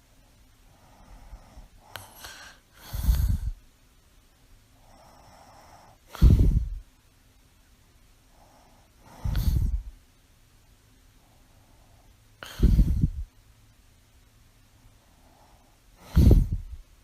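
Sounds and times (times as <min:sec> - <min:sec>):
woman breathing and snoring: 0:00.0 - 0:03.6, 0:04.7 - 0:06.9, 0:08.2 - 0:10.0, 0:11.1 - 0:13.4, 0:14.9 - 0:16.9
loud short breath: 0:12.4 - 0:13.2.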